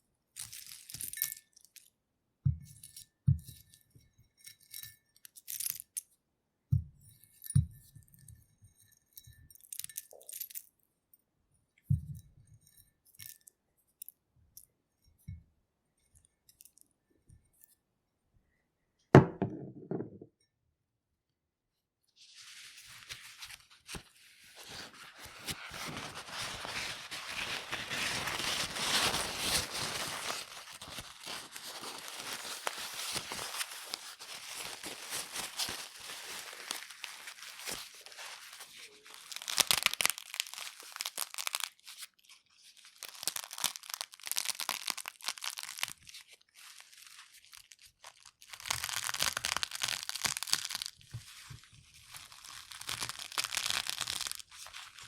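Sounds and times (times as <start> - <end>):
paper towel crinkling: 22.2 - 44.6, 45.4 - 48.1, 50.1 - 55.0
eggshells crunching: 29.9 - 41.8, 43.0 - 46.0, 47.6 - 51.5, 52.1 - 55.0.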